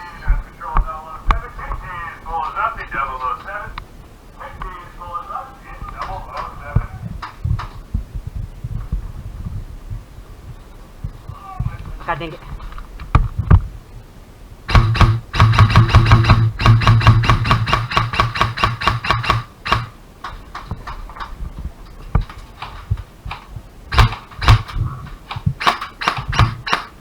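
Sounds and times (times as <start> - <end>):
airsoft gun firing: 14.7 - 20.0, 22.2 - 27.0
motor hum: 14.7 - 20.0, 21.7 - 27.0.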